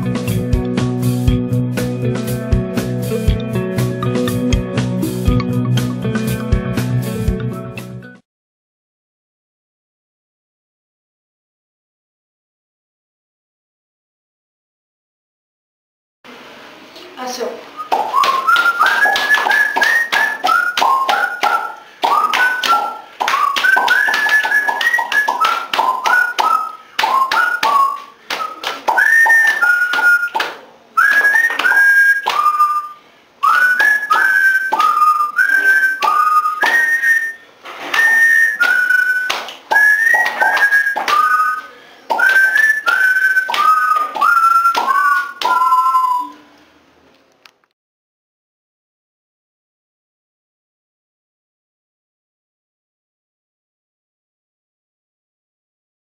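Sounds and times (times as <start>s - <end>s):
whistled tune with sliding notes: 17.8s - 46.5s
hand claps and taps: 17.9s - 32.5s, 33.5s - 37.0s, 37.8s - 45.8s.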